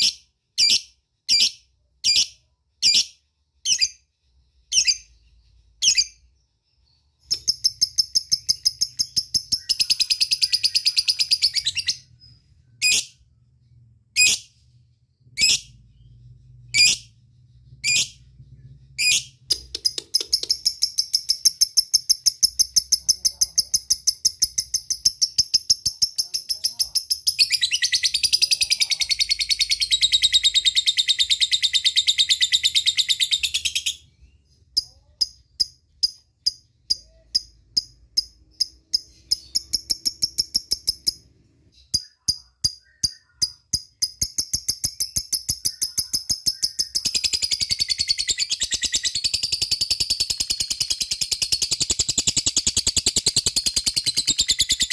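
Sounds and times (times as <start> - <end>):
lovebird chattering: 7.2 - 12.2, 19.0 - 34.0, 34.8 - 54.9.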